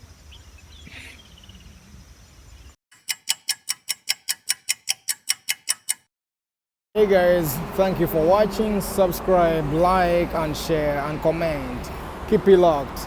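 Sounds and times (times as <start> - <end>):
bird chirps: 0.0 - 2.8
rapid even ticking: 2.9 - 6.1.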